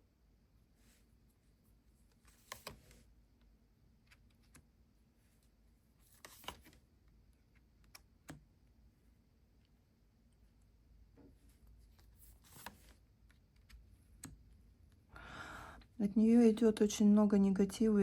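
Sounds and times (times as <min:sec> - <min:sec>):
cards clicking and rustling: 0:02.2 - 0:03.0, 0:06.1 - 0:06.8, 0:11.9 - 0:13.0.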